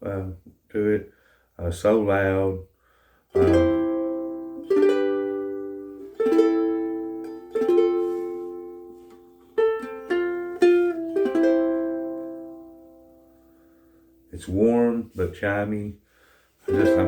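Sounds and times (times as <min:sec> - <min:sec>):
ukulele strumming chords: 0:03.4 - 0:14.3, 0:16.7 - 0:17.0.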